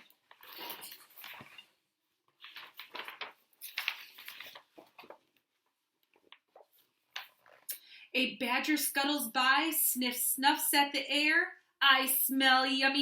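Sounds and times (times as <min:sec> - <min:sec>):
book pages rustling: 0:00.0 - 0:07.7.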